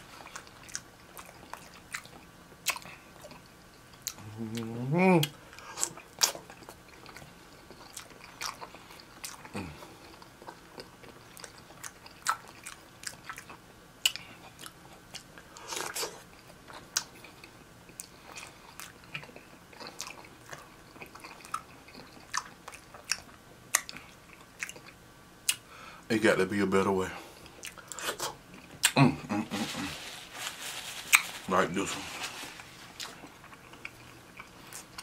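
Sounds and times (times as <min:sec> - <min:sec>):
biting and chewing food: 0:00.0 - 0:25.6, 0:32.4 - 0:35.0
crunchy rustle: 0:29.3 - 0:34.1.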